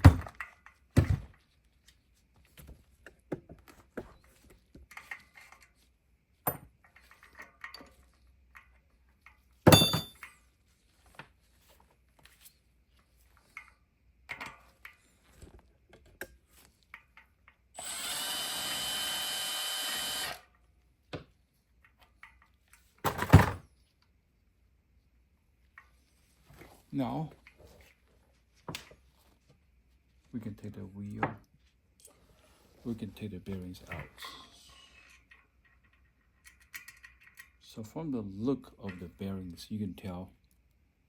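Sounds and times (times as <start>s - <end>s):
power drill running: 17.8s - 20.5s.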